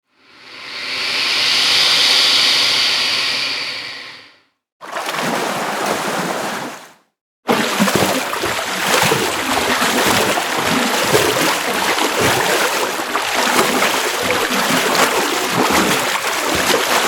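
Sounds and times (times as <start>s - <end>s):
water splashing and churning: 4.8s - 17.0s.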